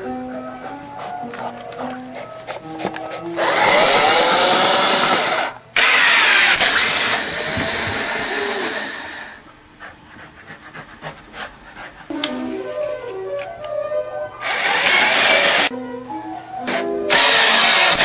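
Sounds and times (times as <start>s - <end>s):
small motor whirring: 3.4s - 9.4s.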